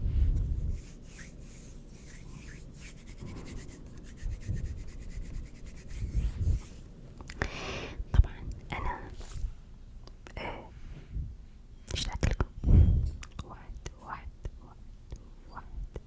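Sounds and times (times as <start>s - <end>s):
hands rubbing together: 0.4s - 6.9s.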